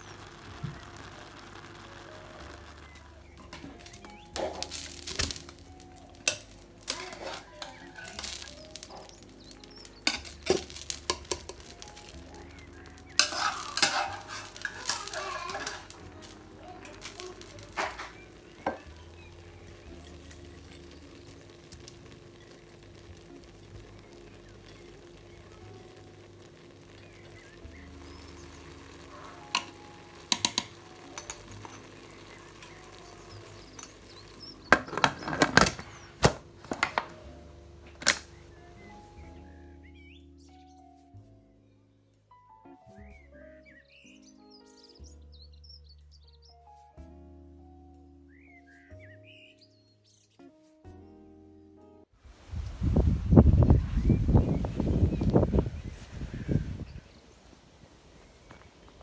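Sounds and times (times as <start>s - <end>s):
food sizzling: 0.0s - 39.9s, 52.3s - 59.0s
soft background music: 0.0s - 54.8s
dishes and utensils clinking: 3.4s - 9.3s, 9.9s - 19.0s, 28.6s - 37.2s
utensil knocking on a pan: 10.0s - 16.0s, 29.5s - 32.8s.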